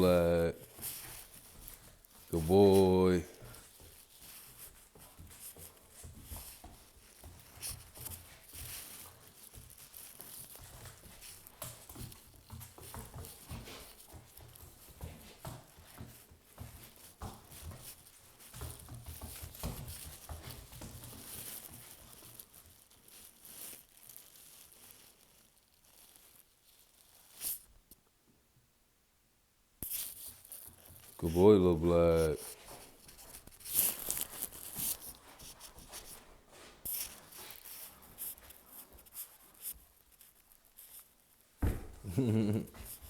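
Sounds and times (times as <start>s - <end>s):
puppy biting and scuffing: 3.5s - 23.8s, 41.6s - 42.1s.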